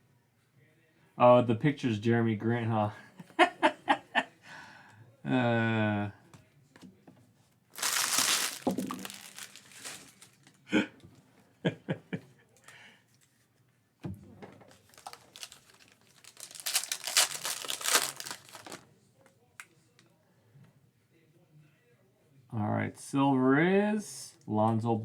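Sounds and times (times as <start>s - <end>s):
wrappers tearing and crinkling: 7.8s - 10.6s, 14.7s - 18.8s.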